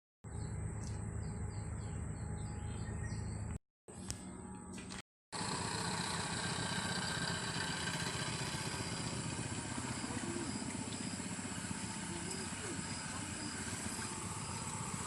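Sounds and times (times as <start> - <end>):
outboard motor running: 4.7 - 15.0.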